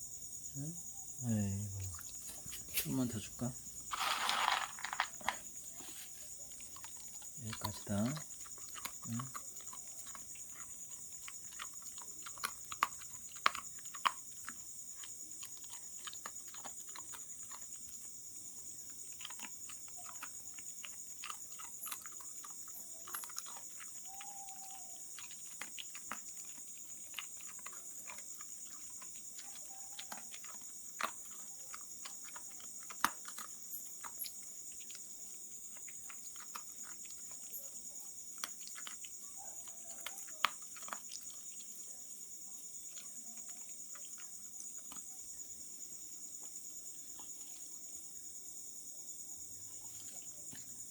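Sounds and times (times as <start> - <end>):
dog crunching dry kibble: 3.8 - 41.7.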